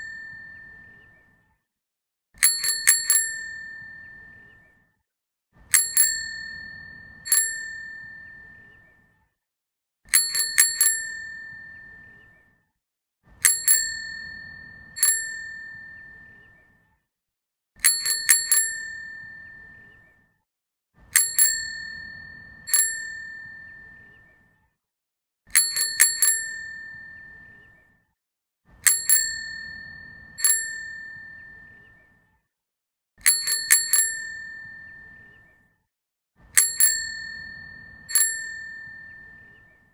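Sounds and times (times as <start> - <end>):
bicycle bell dinging: 0.0 - 1.0, 2.4 - 4.4, 5.7 - 8.8, 10.1 - 12.2, 13.4 - 16.3, 17.8 - 19.9, 21.2 - 24.0, 25.5 - 27.5, 28.8 - 31.8, 33.2 - 35.2, 36.5 - 39.5.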